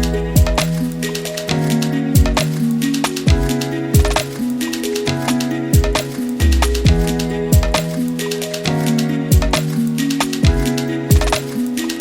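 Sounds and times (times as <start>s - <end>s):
electronic kick drum: 0.0s - 2.6s, 3.2s - 4.4s, 5.1s - 8.2s, 9.3s - 9.7s, 10.4s - 11.4s
hi-hats: 0.0s - 12.0s.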